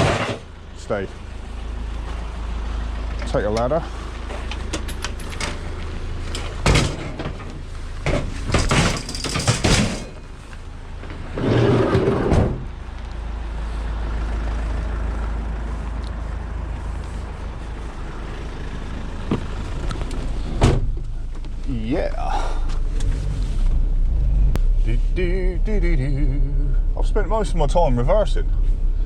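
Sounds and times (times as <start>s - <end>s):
van engine running: 0.0s - 29.0s
ladder knocking and clattering: 8.1s - 10.3s.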